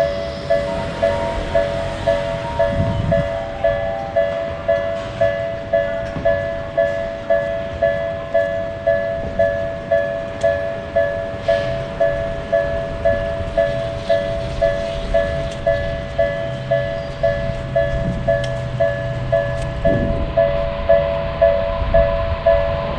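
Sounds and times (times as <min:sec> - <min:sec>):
railroad crossing bell ringing: 0:00.0 - 0:22.9
low rumble: 0:12.0 - 0:22.9.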